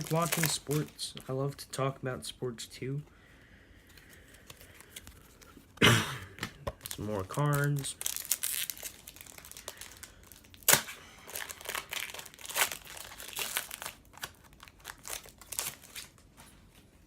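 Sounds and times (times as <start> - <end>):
foil wrapper crinkling and tearing: 0.0 - 1.3, 6.8 - 16.4.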